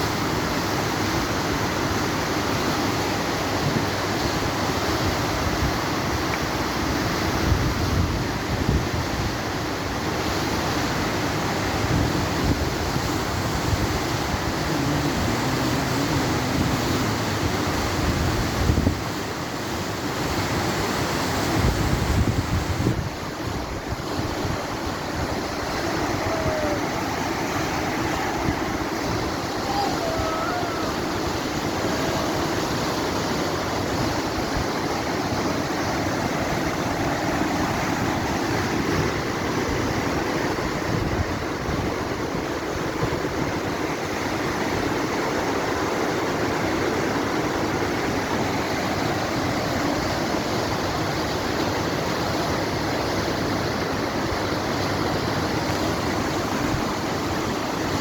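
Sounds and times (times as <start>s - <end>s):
river rapids rushing: 0.0s - 58.0s
wind buffeting microphone: 21.5s - 32.9s.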